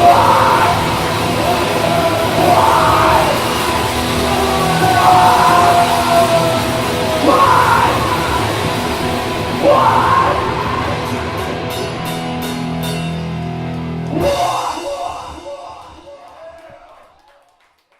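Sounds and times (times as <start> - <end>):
person yelling vocals: 0.0 - 8.6, 14.1 - 16.9
drum and cymbal hits: 0.0 - 16.3
heavy rock band playing: 0.0 - 16.3.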